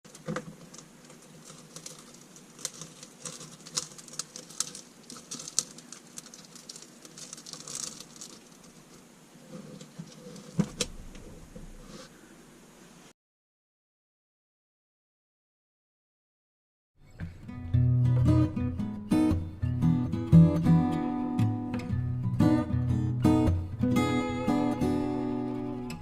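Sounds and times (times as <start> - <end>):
plastic parts clicking and rattling: 0.1 - 11.0.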